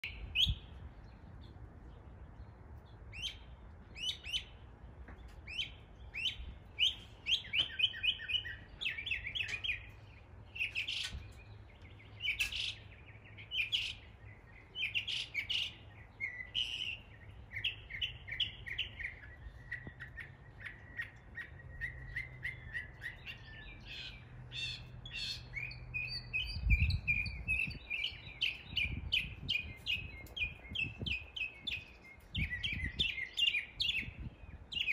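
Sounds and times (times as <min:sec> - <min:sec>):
mockingbird singing varied phrases: 0:12.1 - 0:34.9.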